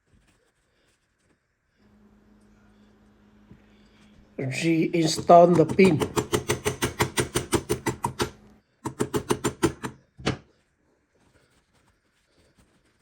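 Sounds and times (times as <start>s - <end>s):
hammer tapping metal pin: 5.0s - 10.0s.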